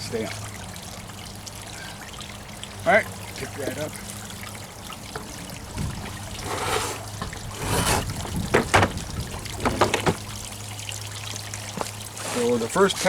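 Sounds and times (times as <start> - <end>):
sharp knocks: 6.4 - 10.4.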